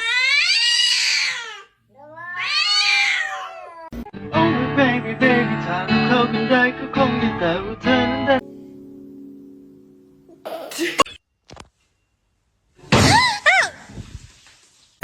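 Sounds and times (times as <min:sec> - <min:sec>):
cat meowing: 0:00.0 - 0:03.9
music: 0:04.0 - 0:11.0.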